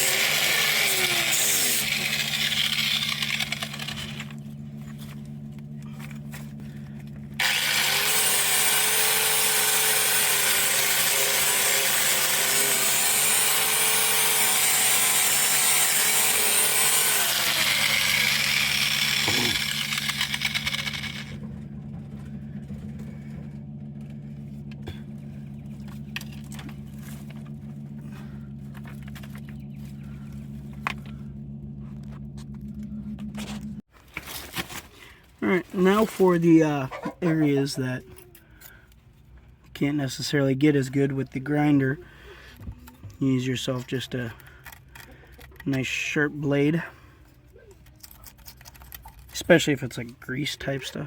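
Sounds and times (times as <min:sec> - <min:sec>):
angle grinder cutting metal: 0:00.0 - 0:04.4, 0:07.4 - 0:21.4
steady low hum: 0:17.4 - 0:33.9.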